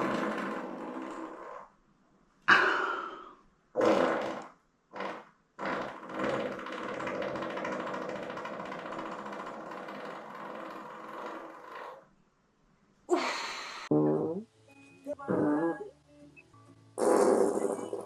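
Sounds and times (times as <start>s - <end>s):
person farting: 0.0s - 1.8s, 3.7s - 12.1s, 13.9s - 14.4s, 15.3s - 15.8s, 17.0s - 18.0s.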